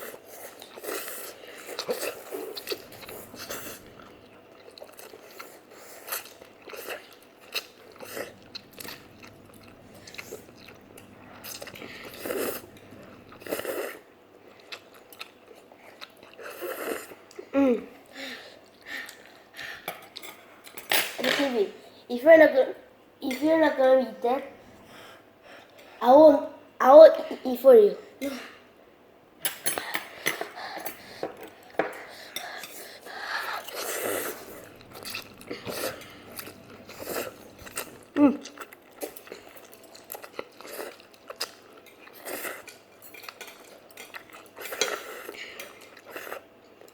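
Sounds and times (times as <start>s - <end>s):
chewing noodles: 0.0s - 17.5s, 29.8s - 46.9s
soft eating noises: 0.0s - 46.9s
utensils clinking against bowl: 29.4s - 32.8s, 41.7s - 46.1s.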